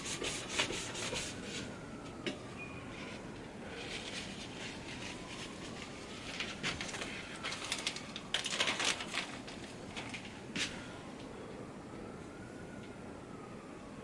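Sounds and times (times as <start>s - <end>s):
paper towel scrubbing metal: 0.0s - 1.7s.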